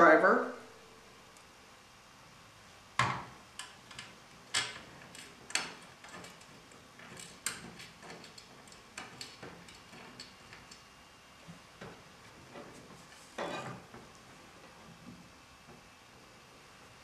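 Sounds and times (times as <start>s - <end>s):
screws and washers clicking: 3.6s - 10.8s.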